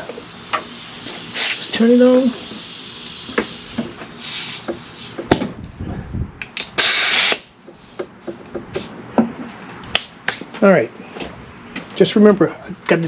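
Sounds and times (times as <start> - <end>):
compressed air hissing burst: 0.0 - 5.2, 6.7 - 8.0.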